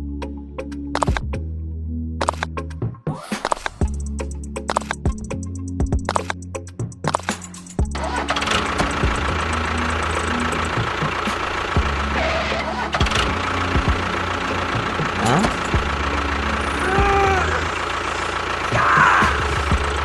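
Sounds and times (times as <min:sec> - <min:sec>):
small engine running: 0:01.0 - 0:01.2, 0:07.1 - 0:20.0.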